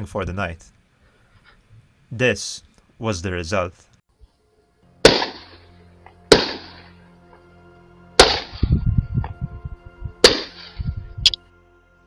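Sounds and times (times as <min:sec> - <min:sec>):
music drone: 0:04.5 - 0:12.0
shotgun shots echoing: 0:05.0 - 0:05.7, 0:06.3 - 0:07.0, 0:08.2 - 0:08.6, 0:10.2 - 0:10.8
low rumbling: 0:08.2 - 0:11.4.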